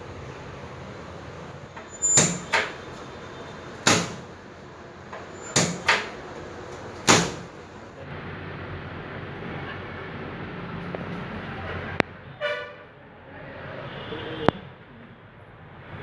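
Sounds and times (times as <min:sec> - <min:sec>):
sharp knocks: 0:03.8 - 0:04.3, 0:07.0 - 0:07.5.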